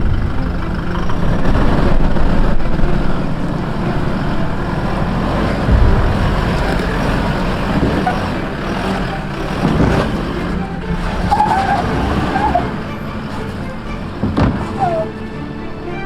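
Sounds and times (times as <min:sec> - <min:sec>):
diesel engine under load: 0:00.0 - 0:16.0
wind on microphone: 0:05.7 - 0:08.4.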